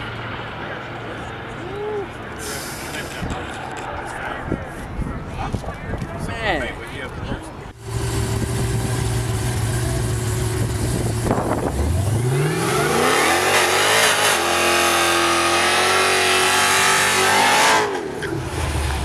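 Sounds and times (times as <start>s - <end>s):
drag racing car accelerating: 7.8s - 19.0s.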